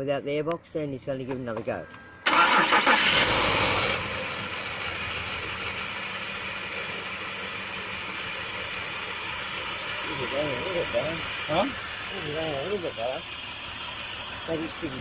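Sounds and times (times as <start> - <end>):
car engine idling: 2.2 - 15.0.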